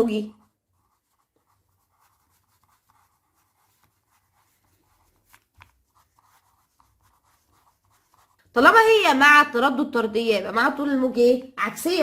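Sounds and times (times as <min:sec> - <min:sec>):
scratching of writing by hand: 0:00.0 - 0:09.1.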